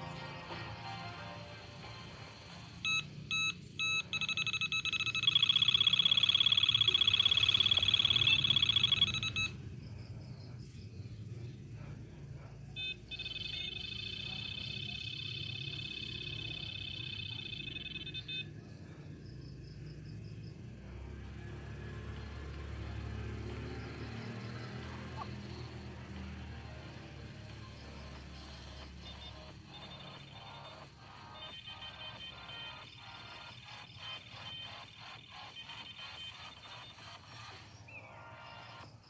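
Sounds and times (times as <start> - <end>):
electronic buzzer beeping: 2.8 - 9.6, 12.8 - 18.6, 27.9 - 38.8
steady low hum: 7.8 - 22.9.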